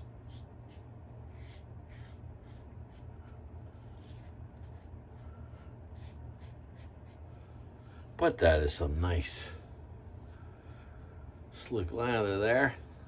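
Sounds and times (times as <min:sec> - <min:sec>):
razor scraping stubble: 0:00.0 - 0:07.2
steady low hum: 0:00.0 - 0:13.0.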